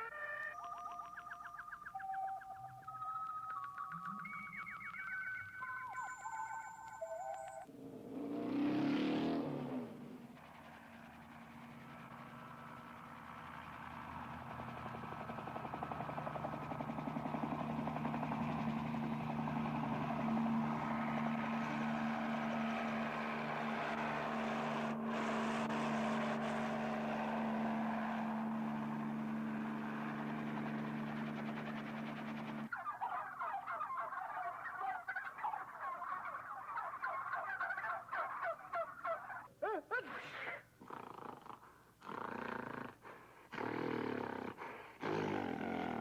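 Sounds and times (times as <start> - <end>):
steady engine hum: 7.2 - 39.8, 41.5 - 46.0
turkey gobbling: 32.7 - 40.6.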